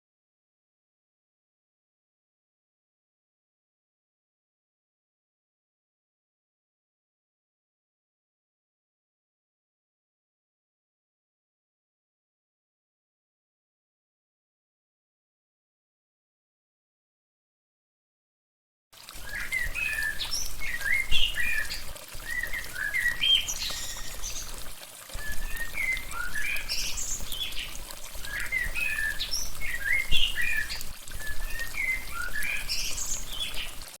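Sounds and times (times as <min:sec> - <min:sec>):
birds chirping: 0:19.2 - 0:33.8.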